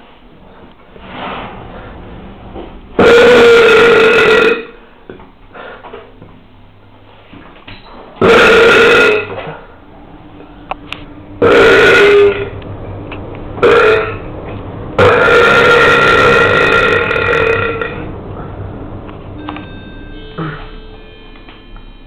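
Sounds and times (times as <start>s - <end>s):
person belching loudly: 3.0s - 4.8s, 8.2s - 9.6s, 11.4s - 12.5s, 13.6s - 14.2s, 15.0s - 18.1s.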